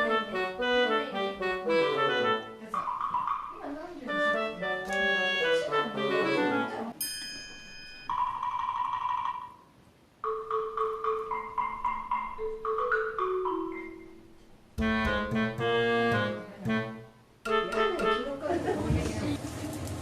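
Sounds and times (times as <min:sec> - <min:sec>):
background music: 0:00.0 - 0:07.0, 0:10.2 - 0:18.8
bell-like mallet percussion: 0:07.0 - 0:09.6.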